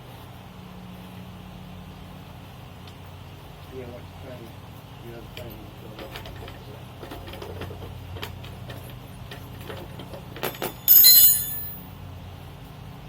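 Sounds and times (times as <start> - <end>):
metal tool clanging on metal: 10.4 - 11.8.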